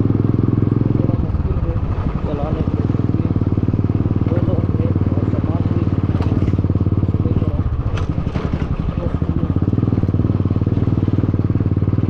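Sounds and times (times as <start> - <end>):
loud motorcycle exhaust: 0.0 - 12.0.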